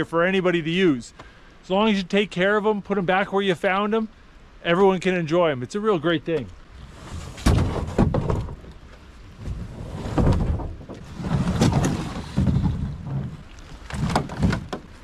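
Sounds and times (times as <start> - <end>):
paddle strokes splashing: 10.9 - 15.0.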